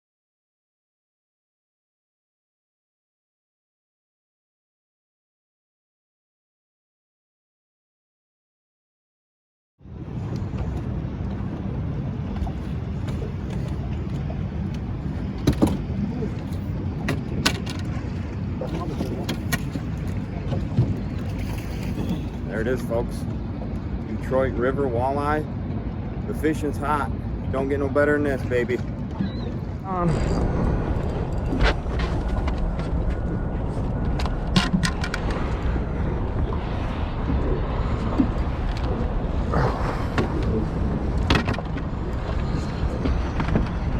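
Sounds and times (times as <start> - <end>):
boat motor rumbling: 9.8 - 43.9
water noise: 9.8 - 43.9
wind noise: 9.8 - 43.9.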